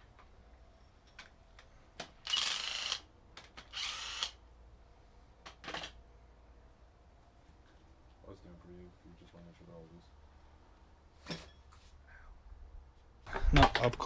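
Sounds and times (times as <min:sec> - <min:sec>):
impact wrench bursts: 0:02.2 - 0:04.4.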